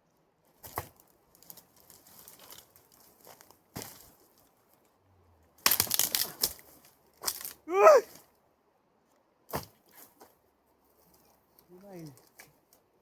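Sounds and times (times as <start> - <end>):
dry wood cracking and snapping: 5.6 - 7.6.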